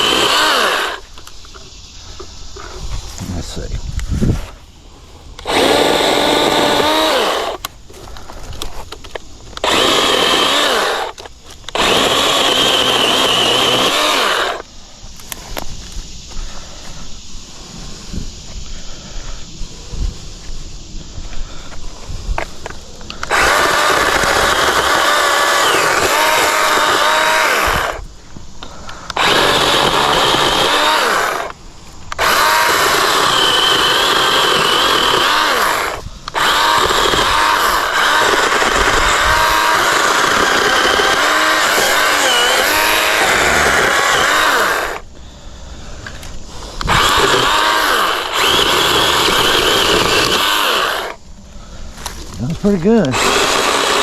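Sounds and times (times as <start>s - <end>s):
battery chainsaw cutting: 0.0s - 1.6s, 5.4s - 15.4s, 22.6s - 45.1s, 46.0s - 51.3s, 52.0s - 54.0s.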